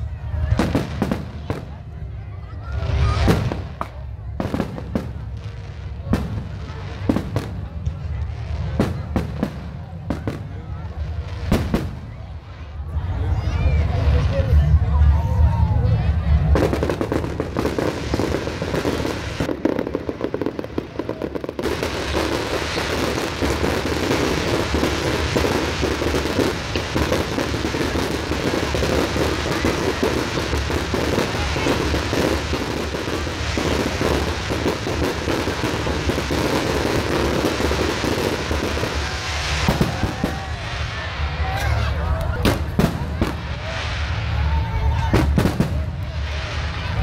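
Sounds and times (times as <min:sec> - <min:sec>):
fireworks crackling: 0:00.0 - 0:47.0.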